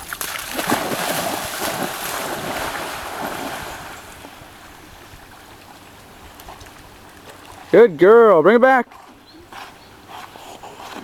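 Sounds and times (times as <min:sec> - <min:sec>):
dog splashing in water: 0:00.0 - 0:04.4.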